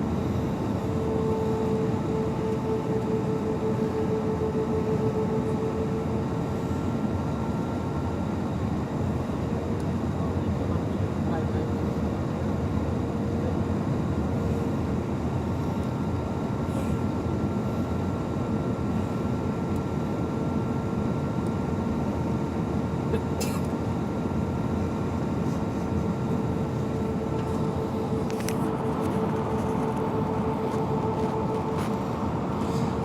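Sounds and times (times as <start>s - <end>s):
faint steady hum: 0.0s - 10.3s, 23.4s - 33.0s
airliner cabin engine rush: 0.0s - 33.0s.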